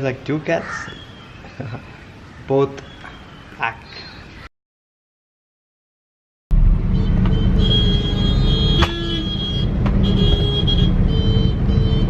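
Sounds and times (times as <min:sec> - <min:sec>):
car interior rumble: 0:06.5 - 0:12.0.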